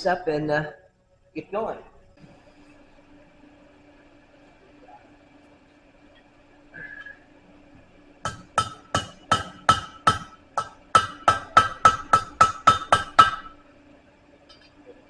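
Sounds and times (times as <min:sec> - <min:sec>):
hammer ringing on hot steel: 0:08.2 - 0:13.5.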